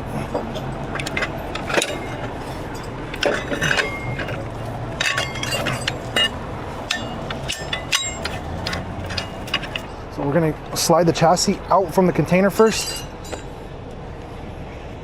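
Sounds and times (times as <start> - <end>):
truck engine idling: 0.0 - 15.0
metal rigging hardware clinking: 0.3 - 10.2, 12.6 - 13.5.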